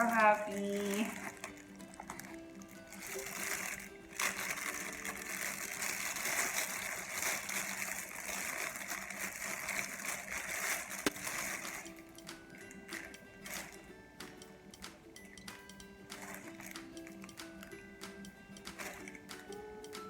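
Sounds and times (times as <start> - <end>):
packaging rustling and crinkling: 0.0 - 12.0, 12.6 - 13.8, 16.2 - 17.2, 18.7 - 19.4.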